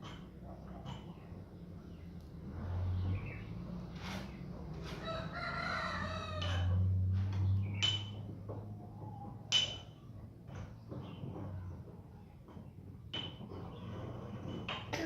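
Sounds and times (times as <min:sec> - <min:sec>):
rooster crowing: 0:04.9 - 0:06.9.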